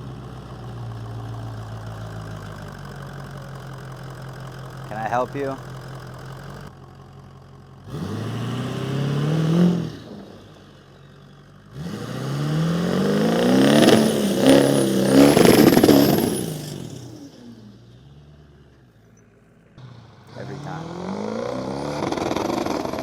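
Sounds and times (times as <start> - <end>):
vehicle engine revving past: 19.8 - 23.0.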